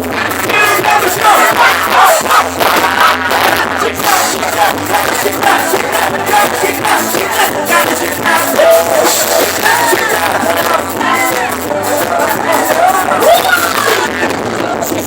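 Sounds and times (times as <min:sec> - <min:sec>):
live band music with steady beat: 0:00.0 - 0:15.0
person singing: 0:00.0 - 0:15.0.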